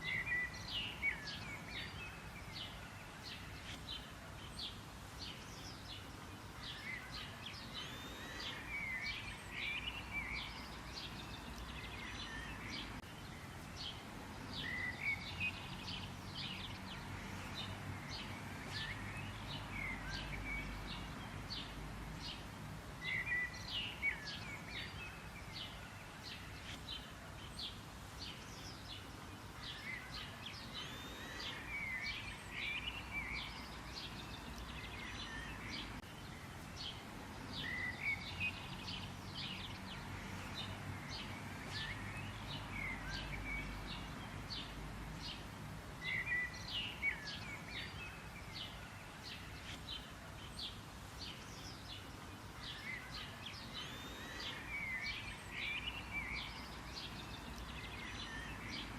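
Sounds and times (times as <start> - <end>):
birds chirping and singing: 0.0 - 58.9.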